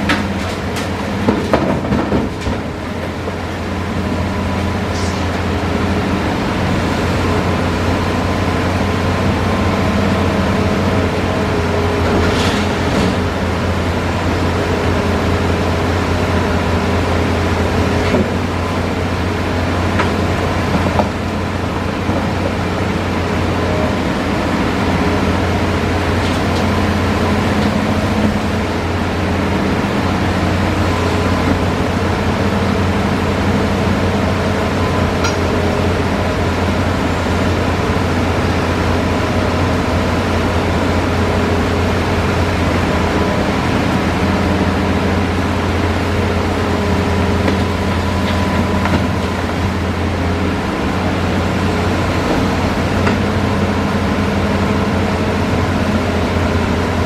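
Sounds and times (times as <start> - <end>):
excavator diesel engine running: 0.0 - 57.0
knocks: 0.1 - 3.1.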